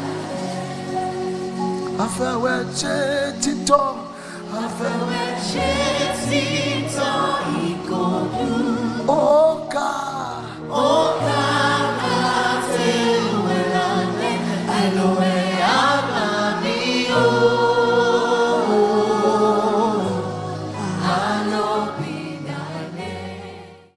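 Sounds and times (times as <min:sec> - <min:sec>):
choir singing: 0:00.0 - 0:03.7, 0:04.4 - 0:23.9.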